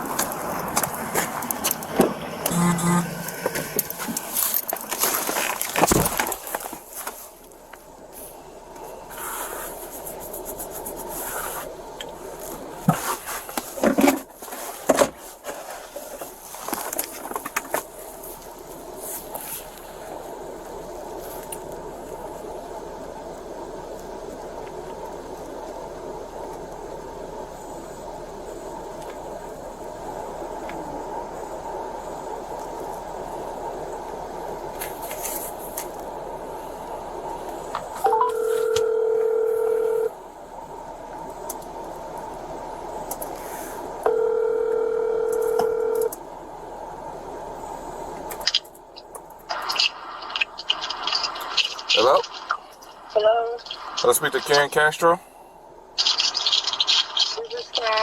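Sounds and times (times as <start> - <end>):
car interior hum: 0.0 - 58.0
rubbing and scraping: 2.5 - 7.4, 9.1 - 11.8, 12.4 - 18.2.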